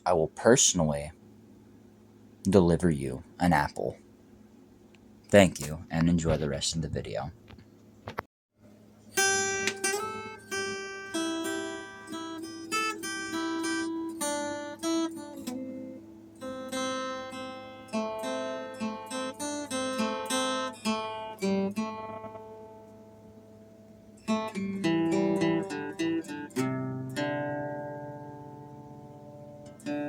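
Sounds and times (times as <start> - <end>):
acoustic guitar plucked melody: 9.0 - 30.0.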